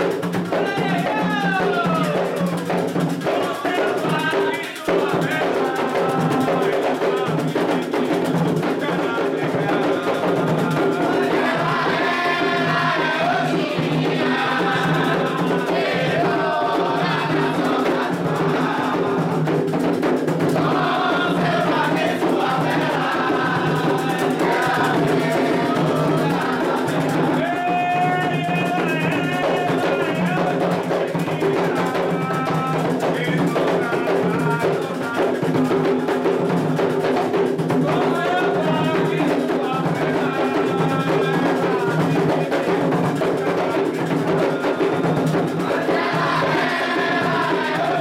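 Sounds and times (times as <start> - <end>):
hand drums beating: 0.0 - 48.0
group of voices chanting: 0.5 - 7.9, 8.9 - 19.5, 20.4 - 35.2, 43.5 - 48.0.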